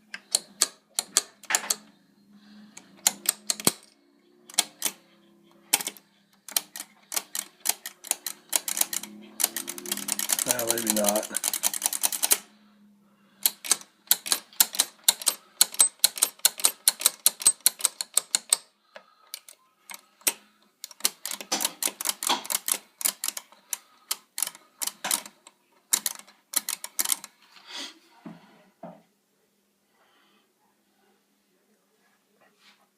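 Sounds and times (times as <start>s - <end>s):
pinball machine clicking: 0.1s - 1.9s, 2.7s - 12.4s, 13.4s - 18.6s, 19.4s - 27.2s.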